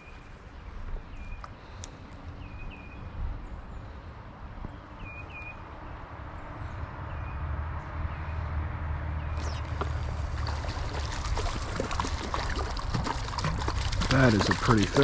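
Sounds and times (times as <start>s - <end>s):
small bird chirping: 9.3s - 10.3s
creek water rushing: 9.4s - 15.0s.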